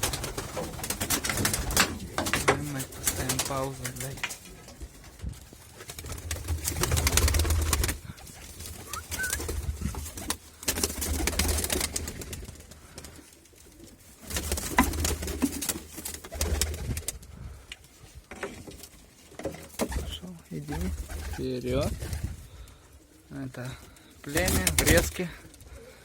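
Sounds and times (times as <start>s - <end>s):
pigeons cooing: 6.7s - 13.2s.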